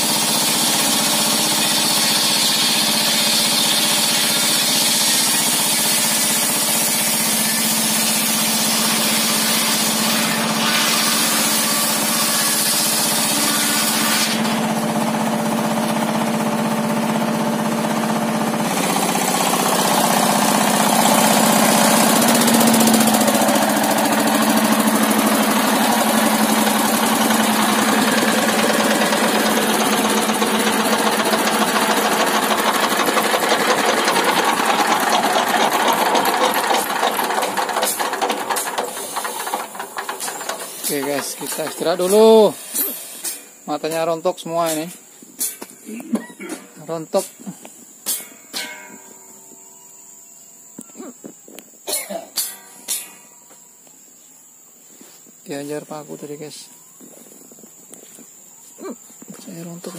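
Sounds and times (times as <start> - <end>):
table saw blade ripping timber: 0.0 - 14.9, 18.6 - 43.5
saw motor humming: 0.0 - 43.1.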